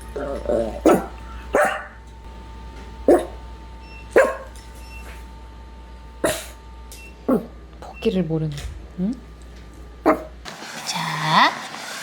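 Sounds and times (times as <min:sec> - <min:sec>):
dog barking: 0:00.8 - 0:02.0, 0:03.1 - 0:03.4, 0:04.1 - 0:04.5, 0:07.3 - 0:07.5, 0:10.0 - 0:10.3.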